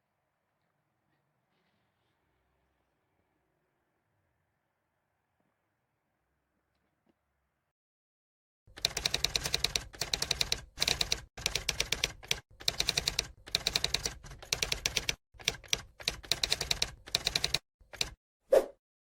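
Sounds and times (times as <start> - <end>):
rapid even clicking: 8.7 - 18.2.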